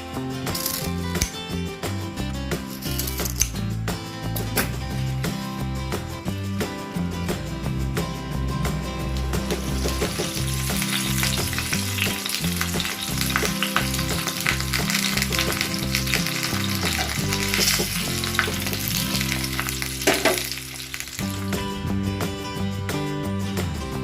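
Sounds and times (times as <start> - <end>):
background music: 0.0 - 24.0
food sizzling in a pan: 9.7 - 21.5.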